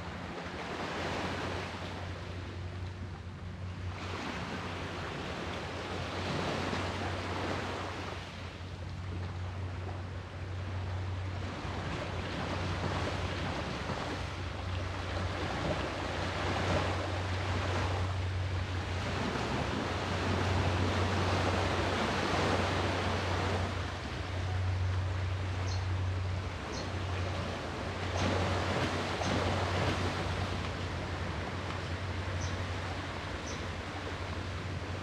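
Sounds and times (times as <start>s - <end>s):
steady low hum: 0.0s - 35.0s
sea surf breaking: 11.5s - 25.6s, 26.2s - 35.0s.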